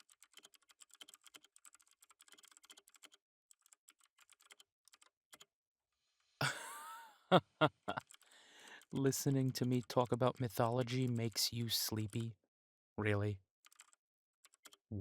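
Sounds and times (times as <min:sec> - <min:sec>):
typing on keyboard: 0:00.0 - 0:05.5, 0:07.7 - 0:12.3, 0:13.6 - 0:14.8
person breathing: 0:08.2 - 0:09.0.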